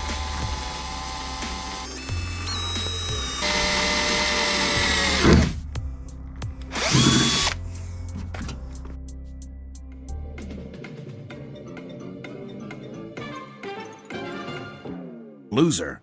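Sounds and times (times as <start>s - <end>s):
power drill boring through steel: 0.0s - 5.5s, 6.7s - 7.6s.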